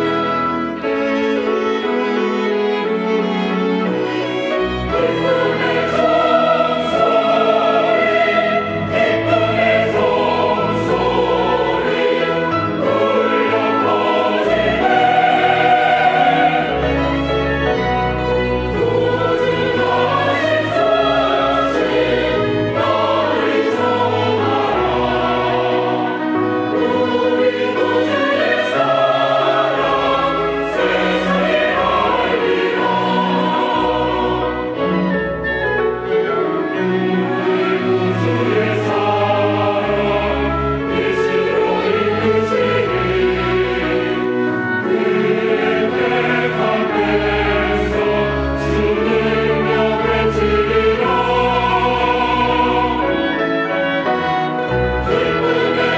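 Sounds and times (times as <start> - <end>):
choir singing: 0.0 - 55.9
instrumental accompaniment: 0.0 - 55.9.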